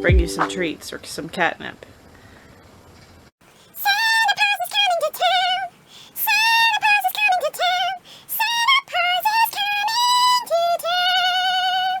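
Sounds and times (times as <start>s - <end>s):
high-pitched singing voice: 3.8s - 12.0s.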